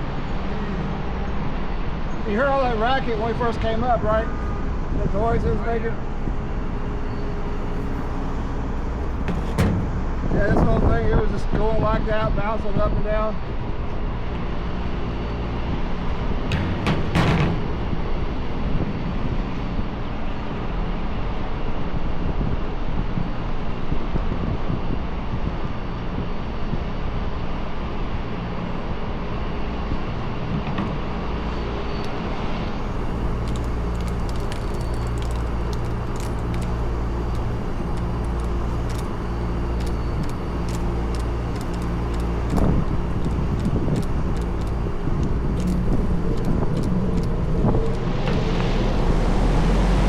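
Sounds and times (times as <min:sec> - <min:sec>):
fan motor humming: 0:06.8 - 0:11.8, 0:29.9 - 0:48.8.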